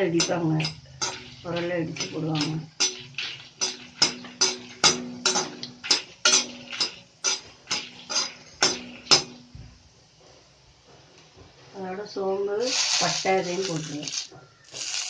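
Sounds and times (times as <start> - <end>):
metal ladle scraping a pan: 0.1 - 9.4, 12.7 - 15.0.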